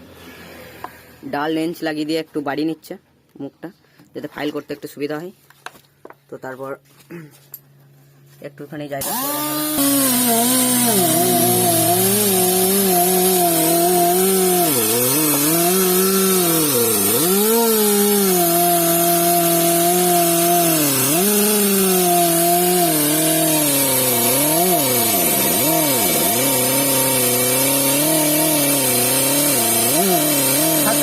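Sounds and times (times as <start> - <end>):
air die grinder whining: 9.0 - 31.0.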